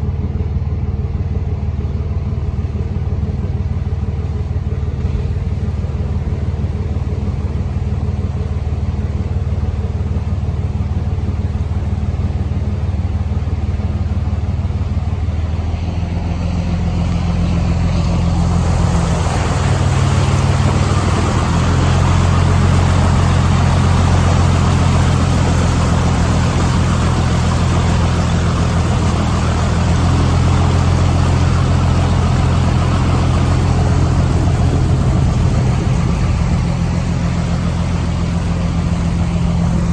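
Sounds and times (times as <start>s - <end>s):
vehicle engine running: 0.0s - 39.9s
rushing hiss: 17.4s - 39.9s.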